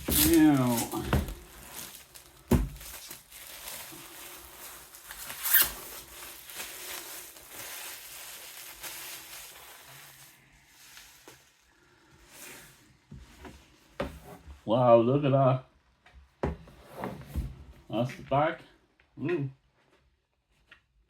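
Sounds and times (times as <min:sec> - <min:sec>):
cardboard rustling and scraping: 0:00.0 - 0:11.6, 0:12.2 - 0:14.6, 0:16.5 - 0:18.1.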